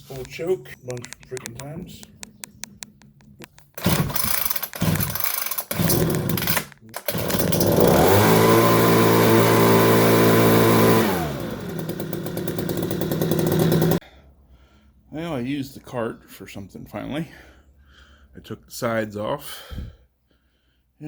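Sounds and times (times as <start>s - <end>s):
leaf blower engine revving: 3.8s - 14.0s.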